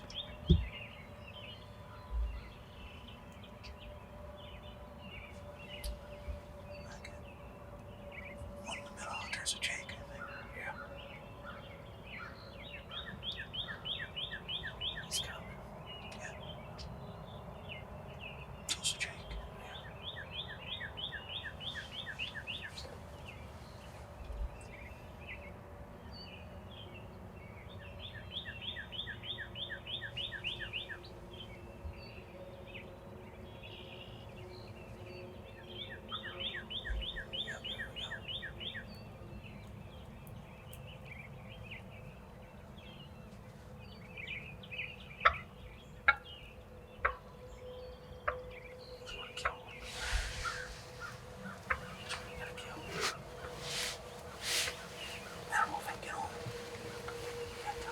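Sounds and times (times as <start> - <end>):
birds chirping: 0.0 - 57.9
bird trilling: 49.1 - 57.9.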